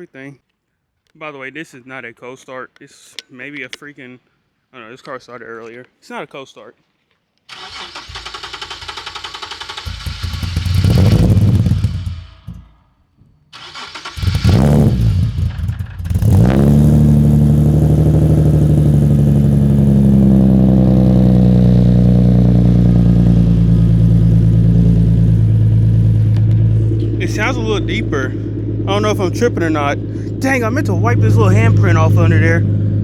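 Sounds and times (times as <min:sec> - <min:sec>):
starter cranking: 0:07.5 - 0:12.7, 0:13.6 - 0:16.5
car engine idling deeply: 0:08.0 - 0:12.7, 0:14.2 - 0:33.0.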